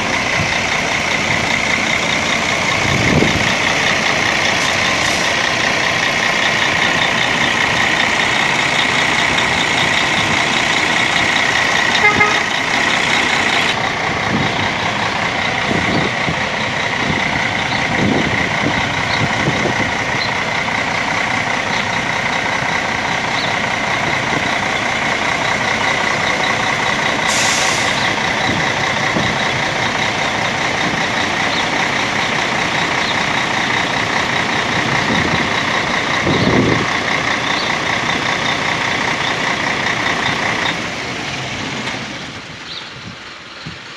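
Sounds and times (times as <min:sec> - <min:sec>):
diesel engine running: 0:00.0 - 0:43.9
air hiss: 0:27.3 - 0:28.2.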